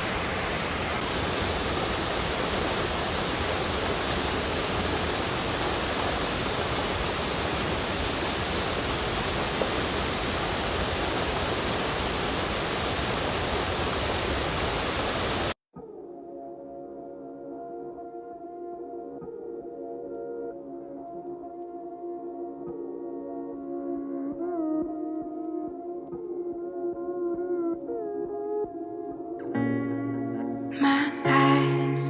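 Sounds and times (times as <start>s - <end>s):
waterfall rushing: 0.0s - 15.5s, 30.8s - 32.0s.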